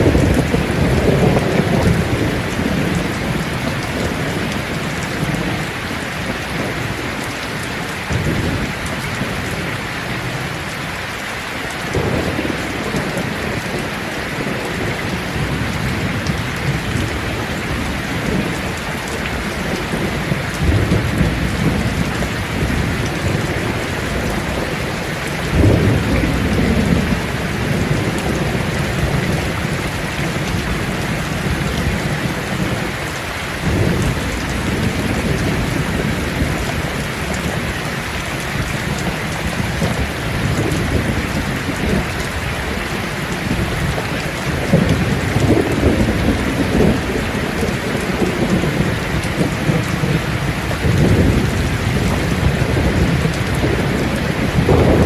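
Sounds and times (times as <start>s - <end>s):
thunder rumbling: 0.0s - 10.9s, 11.7s - 55.0s
rain falling on leaves: 0.0s - 55.0s.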